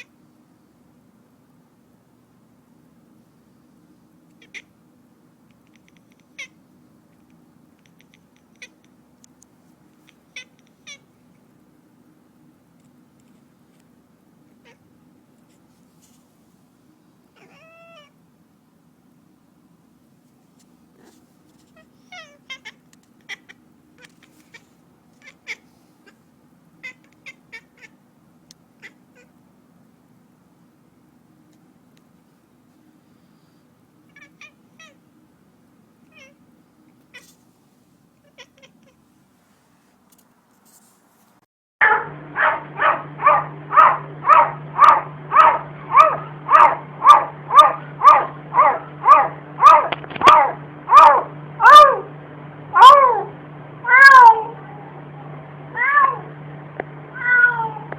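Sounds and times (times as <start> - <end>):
cat making short high calls: 17.4 - 18.1, 21.0 - 26.2, 37.1 - 37.4, 52.8 - 54.8, 57.2 - 57.9
low hum: 41.8 - 57.9.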